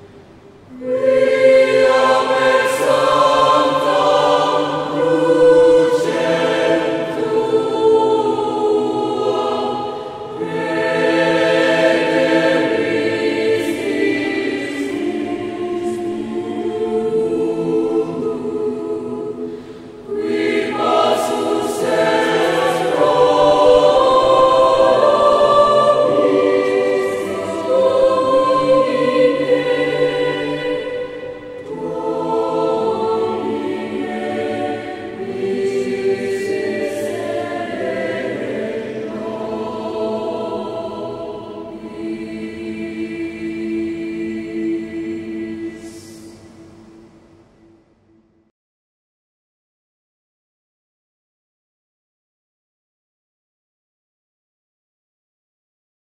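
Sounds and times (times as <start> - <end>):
mixed choir singing: 0.0 - 47.7.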